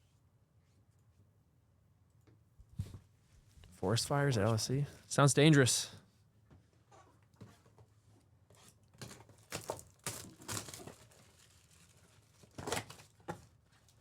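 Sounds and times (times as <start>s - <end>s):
foil wrappers tearing and crinkling: 9.0s - 13.3s.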